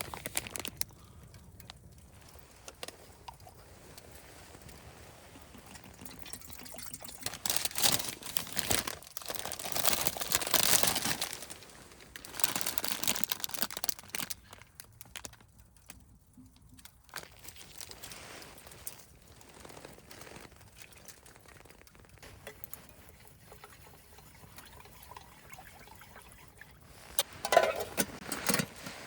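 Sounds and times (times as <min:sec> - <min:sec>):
plastic packaging crinkling: 0:00.0 - 0:03.2, 0:07.1 - 0:15.7, 0:16.6 - 0:22.8
ingredients pouring: 0:04.8 - 0:14.6.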